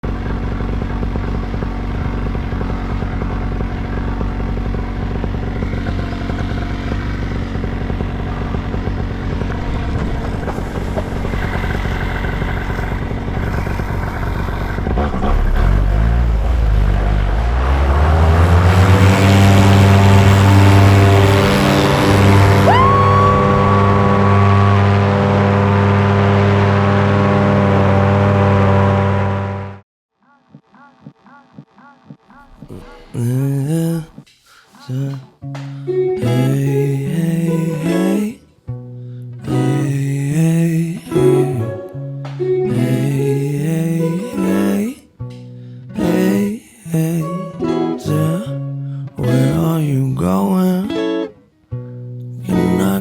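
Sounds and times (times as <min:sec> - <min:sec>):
small aircraft engine: 0:00.0 - 0:29.8.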